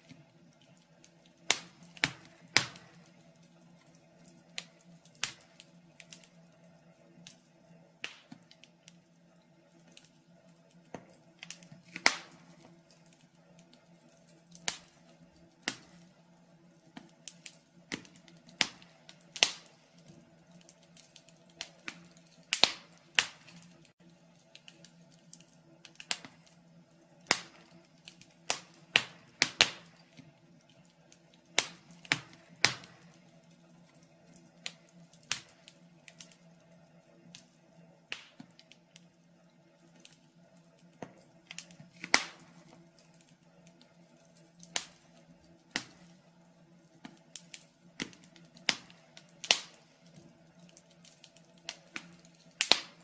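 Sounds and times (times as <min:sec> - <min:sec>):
wood fire crackling: 0:00.0 - 0:53.0.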